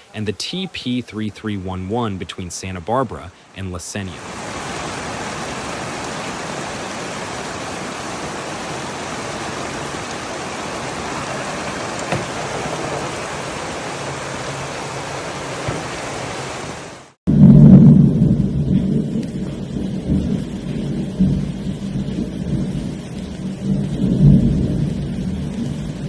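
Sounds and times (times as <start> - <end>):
heavy rain hissing: 0.0 - 17.2, 18.4 - 26.0
deep rumble of thunder: 17.3 - 26.0.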